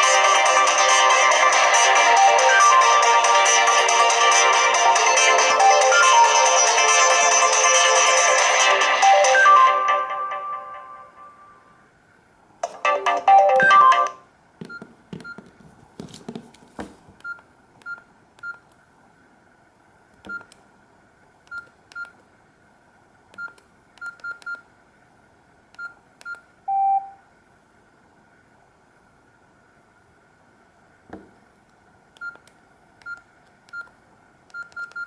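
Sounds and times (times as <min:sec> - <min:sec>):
mobile phone ringtone: 0:08.9 - 0:11.6, 0:12.6 - 0:14.2
keypad beeps: 0:12.6 - 0:15.5, 0:20.3 - 0:20.6, 0:21.5 - 0:22.2, 0:23.4 - 0:24.6, 0:25.8 - 0:27.2, 0:32.2 - 0:32.4, 0:33.0 - 0:33.9, 0:34.5 - 0:35.0.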